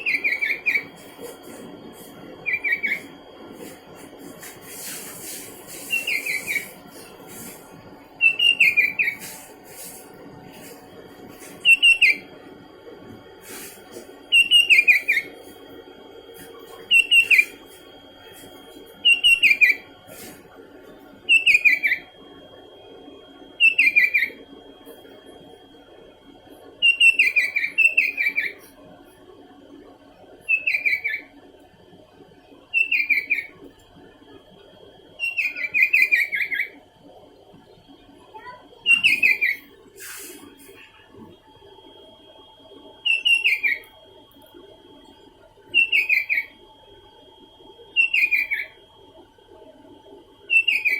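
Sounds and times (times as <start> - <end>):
bulbul whistled calls: 0.0 - 1.3, 2.4 - 3.8, 4.4 - 10.8, 11.4 - 12.3, 13.4 - 15.6, 16.9 - 17.9, 19.0 - 20.4, 21.3 - 22.1, 23.6 - 24.4, 26.8 - 28.6, 30.5 - 31.3, 32.7 - 33.6, 35.2 - 36.8, 38.8 - 40.5, 43.0 - 43.9, 45.8 - 46.6, 48.0 - 48.8, 50.5 - 50.9.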